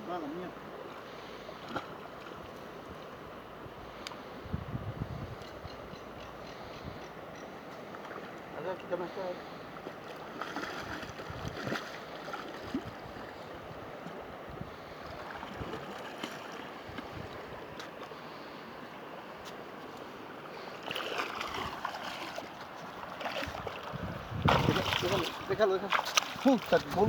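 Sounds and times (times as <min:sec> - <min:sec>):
wind on microphone: 0:03.6 - 0:07.1, 0:10.8 - 0:11.8, 0:12.6 - 0:16.0, 0:16.8 - 0:17.6, 0:23.4 - 0:25.6, 0:26.7 - 0:27.0
river water rushing: 0:09.3 - 0:24.0, 0:24.8 - 0:26.9.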